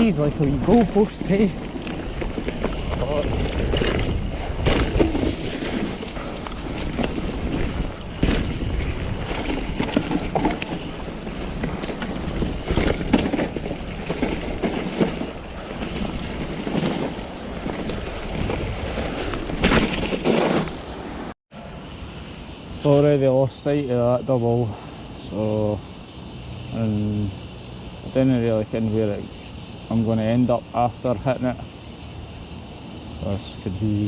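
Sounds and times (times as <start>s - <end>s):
bike knocking and rattling: 0.0s - 21.3s
tyre rumble on dirt: 0.0s - 21.3s
wind rush on microphone: 0.0s - 21.3s.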